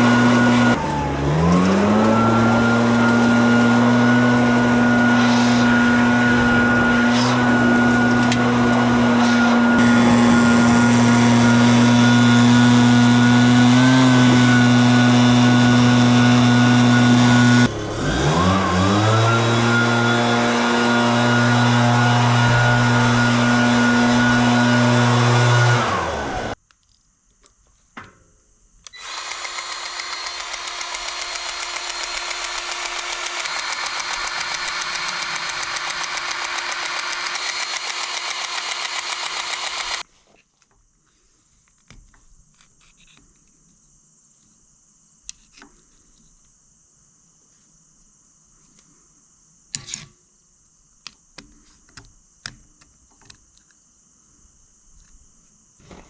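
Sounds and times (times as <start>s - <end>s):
diesel engine winding down: 0.0s - 26.6s
steady machine whir: 0.0s - 26.6s, 29.0s - 40.0s
scattered clicks: 28.8s - 40.0s.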